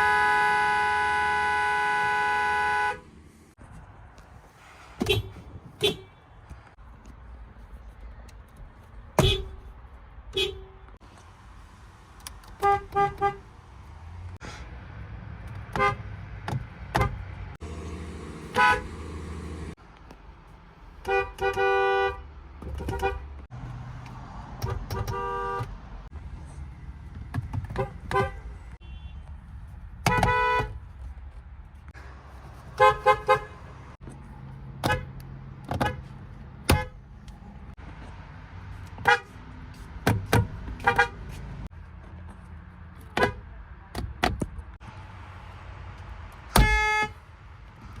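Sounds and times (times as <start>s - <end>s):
two-note car horn toots: 18.3s - 19.5s.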